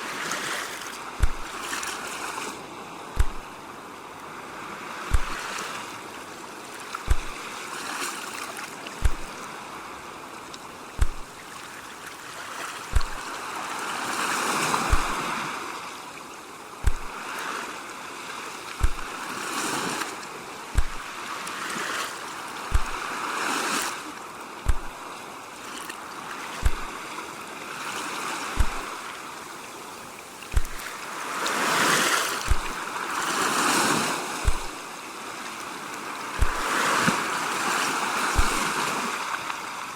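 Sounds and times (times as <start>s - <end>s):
ocean waves washing ashore: 0.0s - 39.9s
short deep thump: 1.2s - 1.5s, 3.2s - 3.5s, 5.1s - 5.4s, 7.1s - 7.4s, 9.0s - 9.3s, 11.0s - 11.3s, 12.9s - 13.2s, 14.9s - 15.2s, 16.8s - 17.1s, 18.8s - 19.1s, 20.8s - 21.0s, 22.7s - 23.0s, 24.7s - 25.0s, 26.6s - 26.9s, 28.6s - 28.9s, 30.5s - 30.8s, 32.5s - 32.8s, 34.4s - 34.7s, 36.4s - 36.7s, 38.4s - 38.6s.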